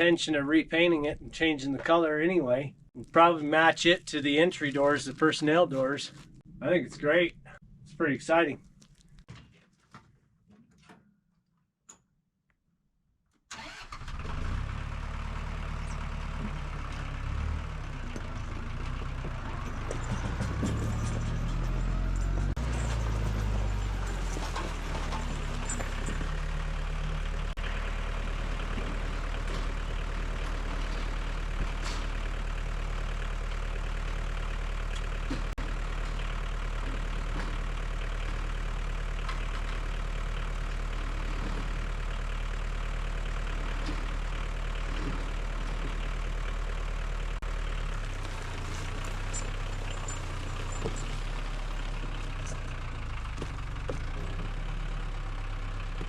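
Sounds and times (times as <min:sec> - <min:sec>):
engine idling: 0:13.5 - 0:56.0.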